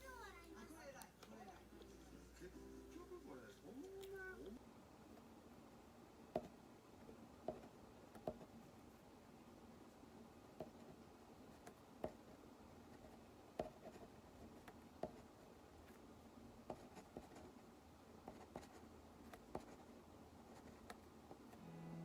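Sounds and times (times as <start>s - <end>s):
faint taps and clicks at desk: 6.3s - 6.6s, 7.4s - 8.5s, 13.6s - 13.9s.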